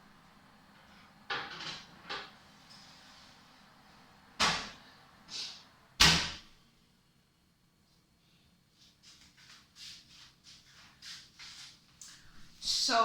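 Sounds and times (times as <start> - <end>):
oven door banging shut: 4.4 - 4.8, 6.0 - 6.5.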